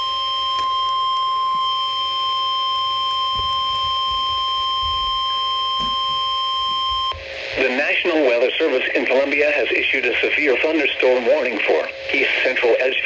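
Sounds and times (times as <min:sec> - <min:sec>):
steady high-pitched alarm tone: 0:00.0 - 0:11.5.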